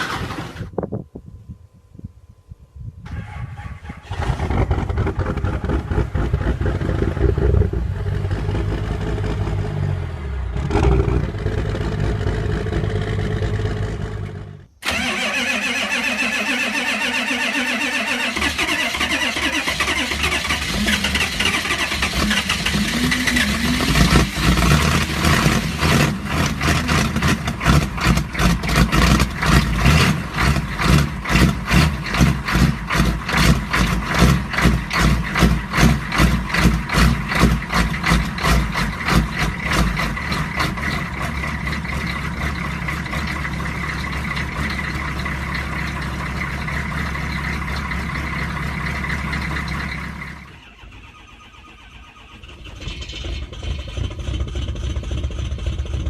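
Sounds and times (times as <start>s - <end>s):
diesel engine starting and running: 0.0s - 0.8s, 3.0s - 56.0s.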